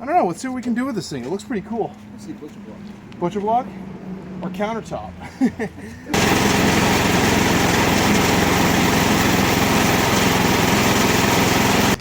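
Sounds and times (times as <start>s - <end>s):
small gasoline engine running: 6.1s - 12.0s.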